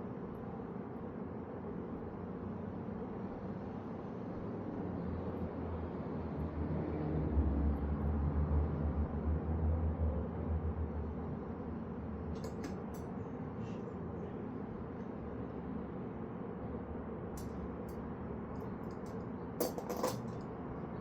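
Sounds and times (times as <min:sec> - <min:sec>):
clicks of parts handled: 0:12.4 - 0:13.0, 0:18.9 - 0:20.4.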